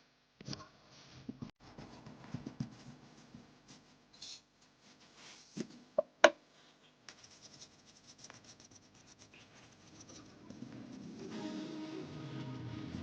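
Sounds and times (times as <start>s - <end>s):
scratching and rubbing: 7.0s - 11.3s.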